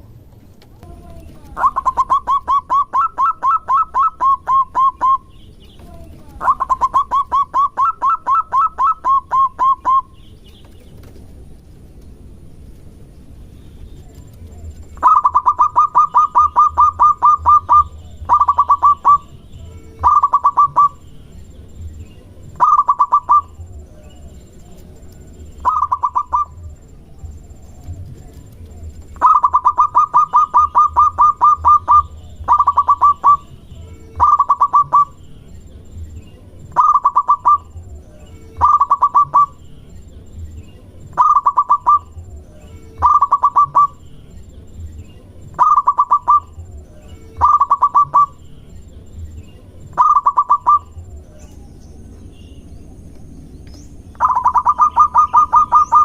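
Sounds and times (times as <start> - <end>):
dove cooing: 0.8 - 10.3, 14.0 - 21.1, 21.8 - 35.2, 36.7 - 39.7, 41.0 - 44.1, 45.4 - 48.5, 49.8 - 51.6, 54.2 - 56.0.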